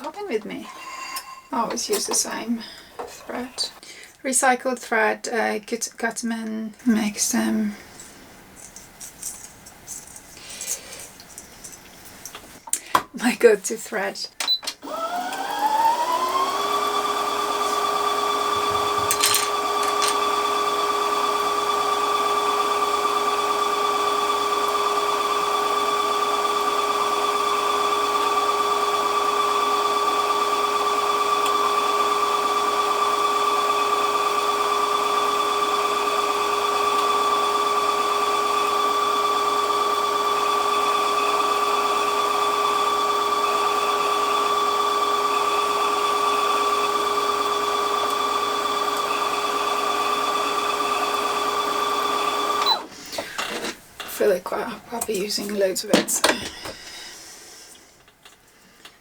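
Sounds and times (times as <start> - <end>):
sewing machine motor whine: 14.8 - 53.0.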